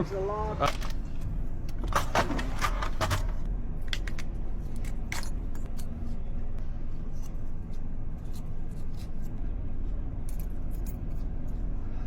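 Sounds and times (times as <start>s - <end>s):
metal keys and tools jangling: 4.6s - 6.0s, 10.2s - 11.6s.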